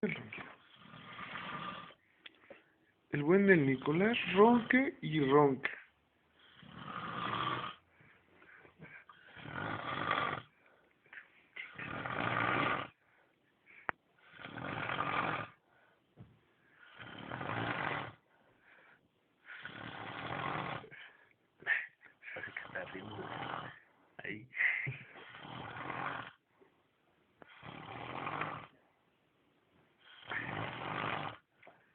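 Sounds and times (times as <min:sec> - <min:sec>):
man snoring loudly: 0:00.1 - 0:02.0, 0:06.5 - 0:07.8, 0:09.3 - 0:10.5, 0:11.7 - 0:13.0, 0:14.3 - 0:15.6, 0:16.9 - 0:18.2, 0:19.6 - 0:20.9, 0:22.4 - 0:23.8, 0:25.3 - 0:26.4, 0:27.5 - 0:28.8, 0:30.2 - 0:31.4.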